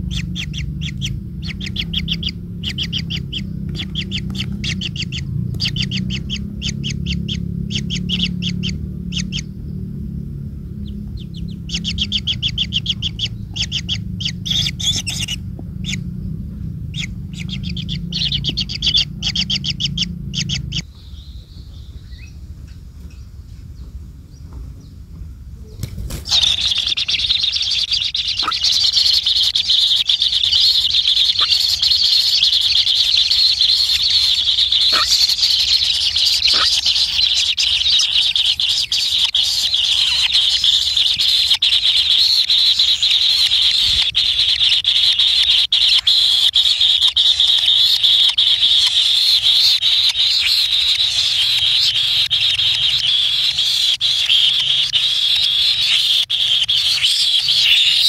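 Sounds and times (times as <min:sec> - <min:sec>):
bird chittering: 0:00.0 - 0:23.3, 0:25.8 - 0:58.0
low rumble: 0:00.0 - 0:28.4.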